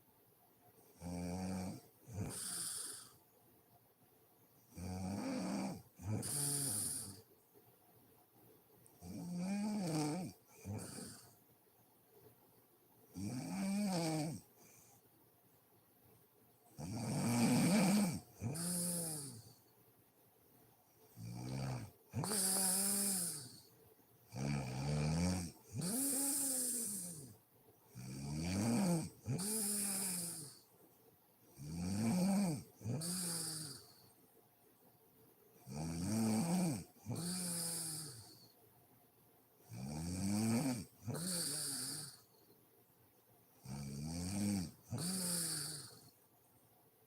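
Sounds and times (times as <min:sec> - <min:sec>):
woman snoring: 0:01.0 - 0:03.2, 0:04.8 - 0:07.2, 0:09.0 - 0:11.3, 0:13.2 - 0:14.4, 0:16.8 - 0:19.5, 0:21.2 - 0:23.6, 0:24.3 - 0:27.3, 0:28.0 - 0:30.6, 0:31.6 - 0:33.9, 0:35.7 - 0:38.4, 0:39.7 - 0:42.3, 0:43.6 - 0:46.1
breathy hiss: 0:01.7 - 0:03.3, 0:05.1 - 0:07.3, 0:17.1 - 0:19.7, 0:21.1 - 0:30.8, 0:31.5 - 0:34.2, 0:40.6 - 0:42.5, 0:44.6 - 0:46.2.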